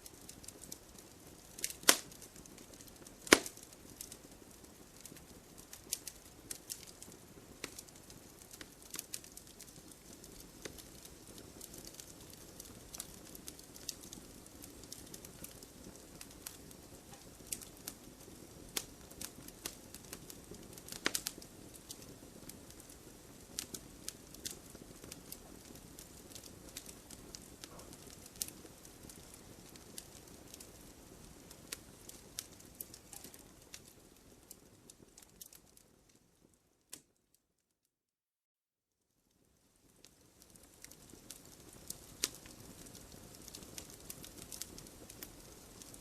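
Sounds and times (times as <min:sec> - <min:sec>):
wood fire crackling and popping: 0:00.0 - 0:37.2, 0:39.3 - 0:46.0
flame rushing: 0:00.1 - 0:16.7.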